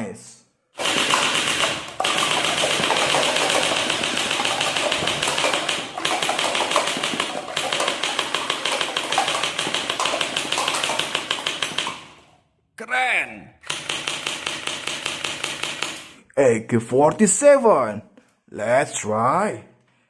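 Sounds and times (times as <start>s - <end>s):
toy pistol rapid mechanical clicks: 0.8s - 12.2s, 13.6s - 16.2s.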